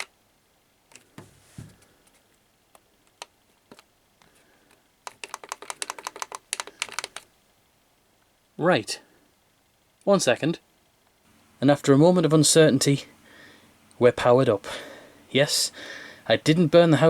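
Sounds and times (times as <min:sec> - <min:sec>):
keyboard keystrokes: 0:05.0 - 0:07.3.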